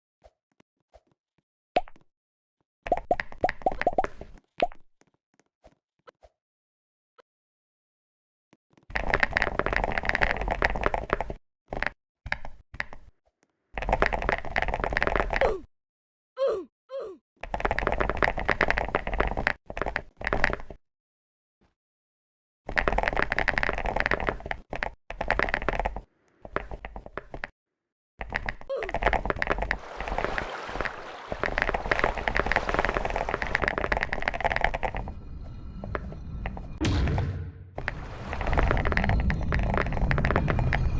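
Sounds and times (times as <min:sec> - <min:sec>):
rapid crackling and crinkling: 0:08.7 - 0:12.0, 0:17.4 - 0:20.8, 0:22.7 - 0:27.5, 0:28.2 - 0:36.8, 0:37.7 - 0:40.9.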